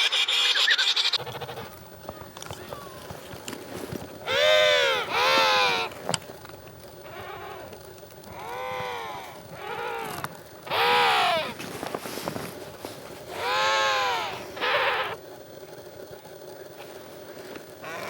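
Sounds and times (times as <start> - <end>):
penguins calling: 0.0 - 6.2, 7.0 - 11.6, 13.3 - 15.2.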